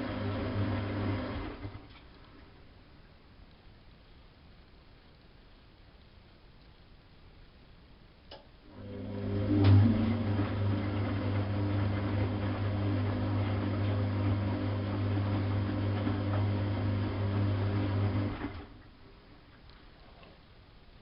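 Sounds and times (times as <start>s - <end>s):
washing machine motor hum: 0.0s - 2.1s, 8.6s - 19.6s.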